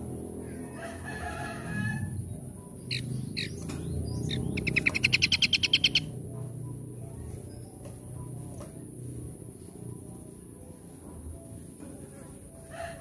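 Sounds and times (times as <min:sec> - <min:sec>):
low background noise: 0:00.0 - 0:13.0
songbird chirping and trilling: 0:00.3 - 0:08.9.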